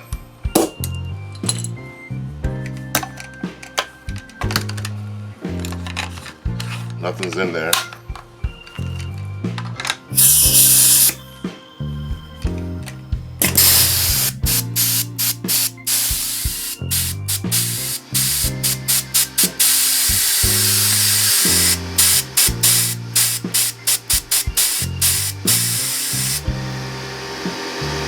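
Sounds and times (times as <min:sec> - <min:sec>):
background music with bass: 0:00.0 - 0:28.0
compressed air hissing: 0:10.2 - 0:11.2, 0:13.5 - 0:26.6.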